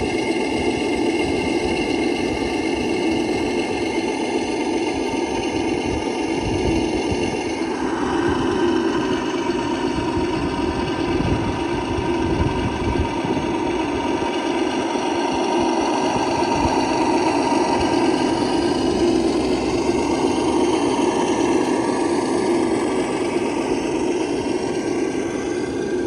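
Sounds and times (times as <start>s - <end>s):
toy truck motor whirring: 0.0s - 26.0s.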